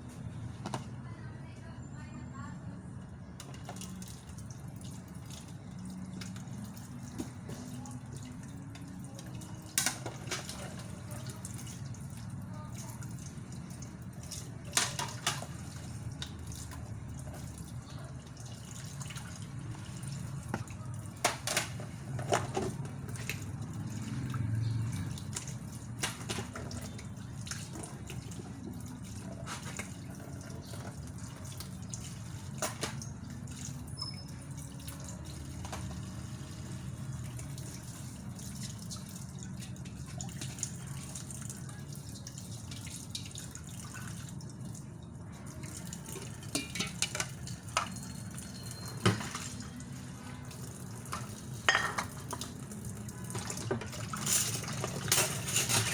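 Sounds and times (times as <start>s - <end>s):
water running in a sink: 3.4s - 55.9s.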